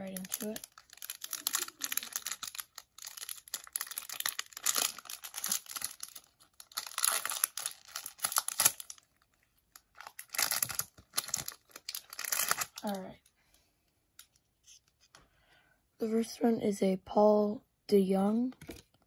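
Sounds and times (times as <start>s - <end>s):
wrapper tearing and crinkling: 0.0s - 13.0s.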